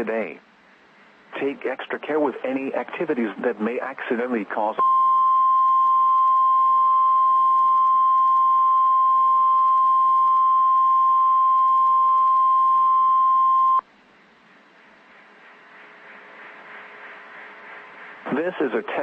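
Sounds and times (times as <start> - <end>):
faint radio hiss: 0.0 - 4.8, 11.6 - 19.0
loud steady alarm beep: 4.8 - 13.8.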